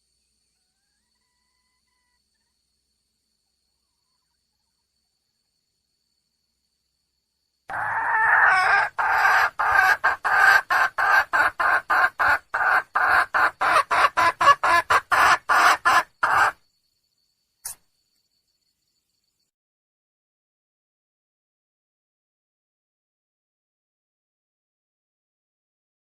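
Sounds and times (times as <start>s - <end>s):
hen clucking calls: 7.7s - 16.6s.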